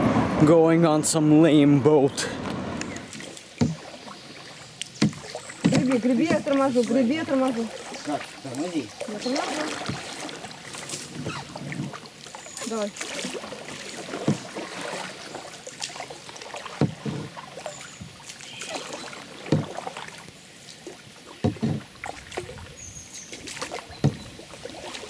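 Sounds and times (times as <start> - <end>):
moving water hiss: 0.0 - 25.0
paddle strokes splashing: 0.0 - 25.0.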